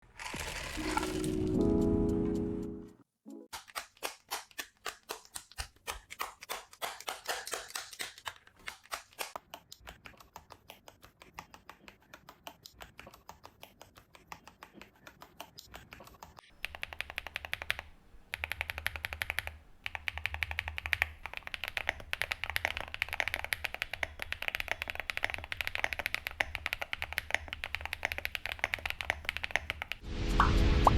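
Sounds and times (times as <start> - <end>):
mechanical keyboard typing: 0.2 - 1.8, 16.6 - 30.0.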